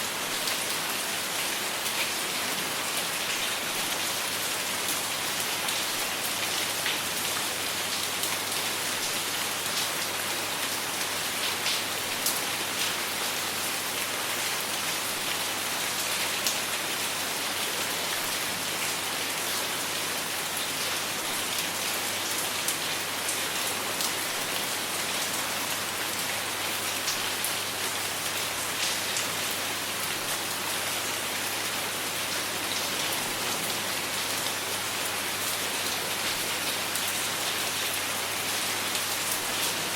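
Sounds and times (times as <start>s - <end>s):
rain hissing on a surface: 0.0s - 39.9s
raindrops ticking and splatting: 11.1s - 14.1s.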